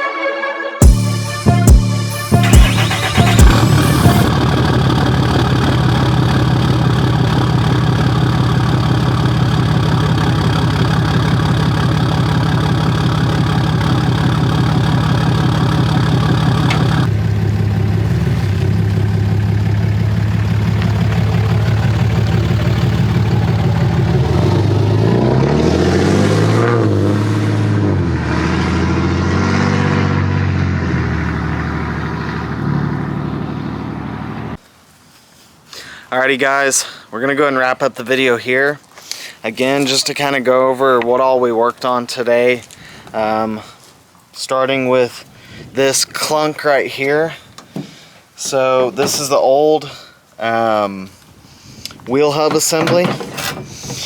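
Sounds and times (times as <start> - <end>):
diesel pickup engine revving: 0.8 - 34.6.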